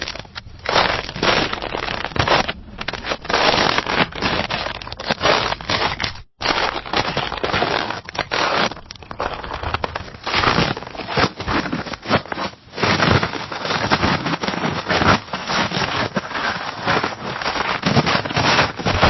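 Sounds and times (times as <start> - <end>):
footsteps crunching in snow: 0.0 - 8.6.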